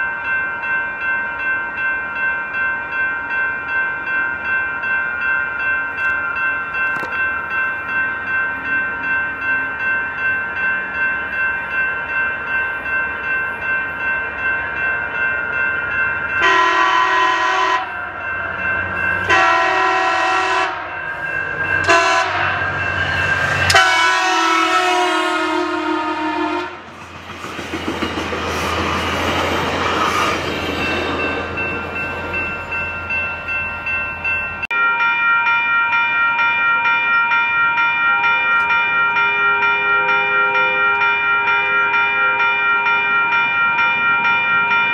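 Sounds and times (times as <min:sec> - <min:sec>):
crossing bell ringing: 0:00.0 - 0:44.9
passing train rumble: 0:00.0 - 0:44.9
locomotive horn blasts: 0:16.4 - 0:18.0, 0:19.2 - 0:20.9, 0:21.8 - 0:22.7, 0:23.6 - 0:26.9.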